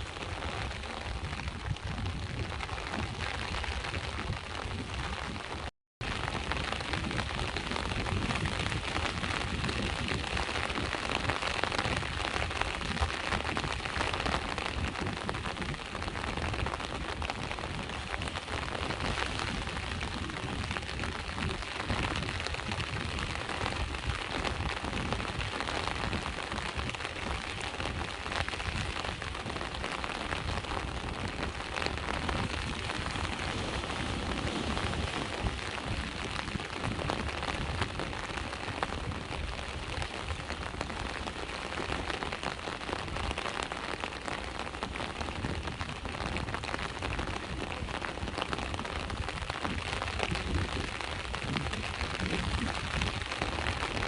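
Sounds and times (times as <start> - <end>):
steady rain falling: 0.0 - 54.0
sea waves: 29.4 - 45.4.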